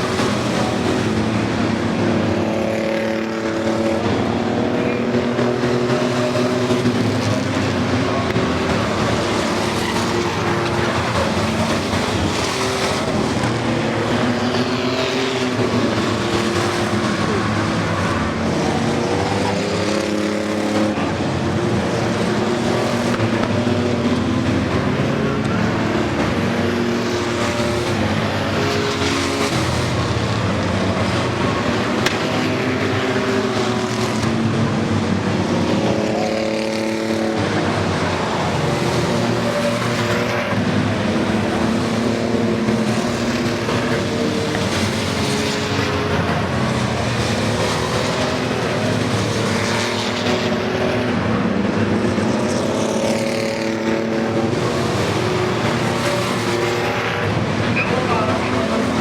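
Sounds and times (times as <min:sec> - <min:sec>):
race truck engines at high revs: 0:00.0 - 0:59.0.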